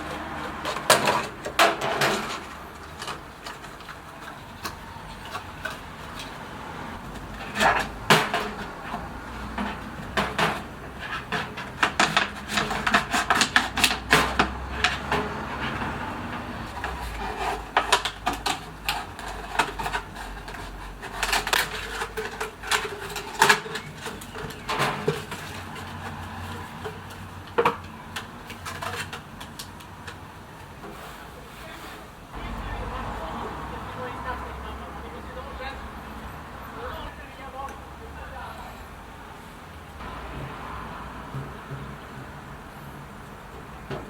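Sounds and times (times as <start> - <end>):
hands clicking and tapping objects: 0.0 - 30.9.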